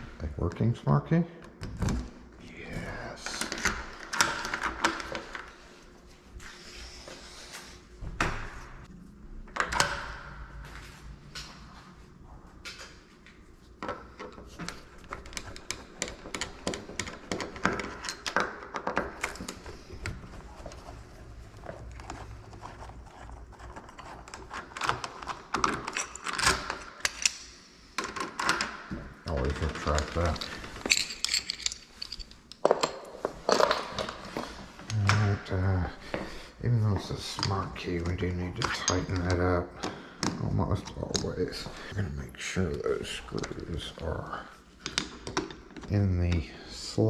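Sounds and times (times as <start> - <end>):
keys rattling: 23.1 - 27.3, 29.4 - 35.4.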